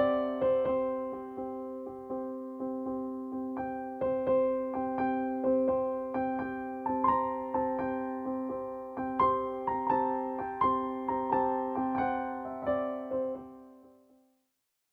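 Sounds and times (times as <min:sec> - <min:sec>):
slow piano melody: 0:00.0 - 0:14.2.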